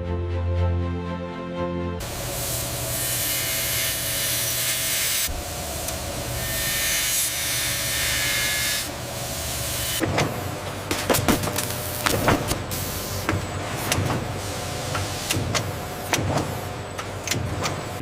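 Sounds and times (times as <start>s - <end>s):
music: 0.0s - 2.0s
factory machinery hiss and whir: 2.0s - 18.0s.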